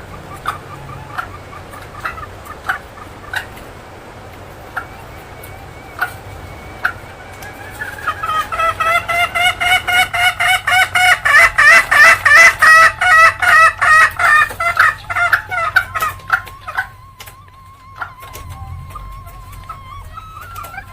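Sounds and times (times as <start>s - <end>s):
hen cackling: 0.0s - 20.9s.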